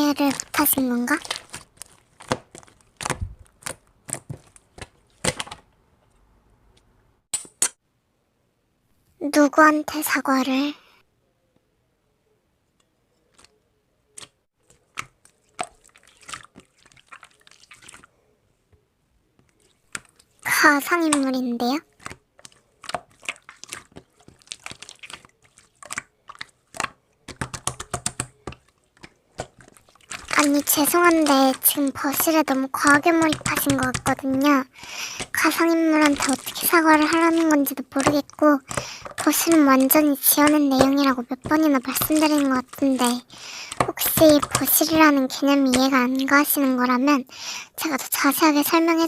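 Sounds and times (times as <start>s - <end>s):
slime squeezed by hand: 0.0s - 5.6s, 21.9s - 44.9s.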